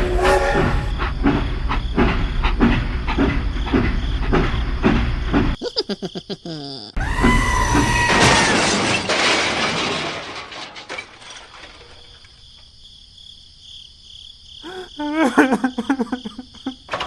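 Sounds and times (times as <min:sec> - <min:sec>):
rhythmic mechanical clatter: 0:00.0 - 0:05.6.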